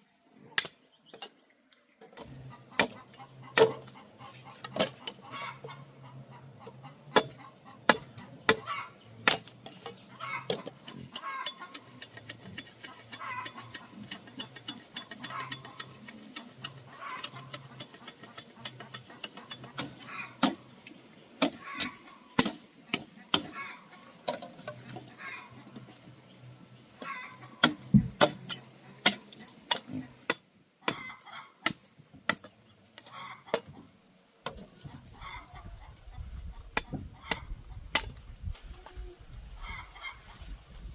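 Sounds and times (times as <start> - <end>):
geese honking: 2.3 - 9.1, 10.0 - 12.0, 12.9 - 14.0, 15.2 - 16.1, 16.7 - 20.7, 21.6 - 24.2, 24.8 - 25.8, 27.0 - 27.6, 33.0 - 33.6, 34.9 - 37.8, 39.6 - 40.3.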